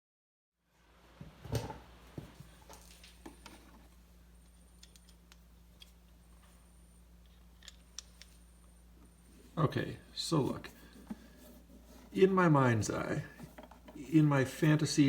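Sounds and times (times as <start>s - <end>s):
steady low hum: 1.1s - 15.0s
small objects clicking and tapping: 4.8s - 6.0s.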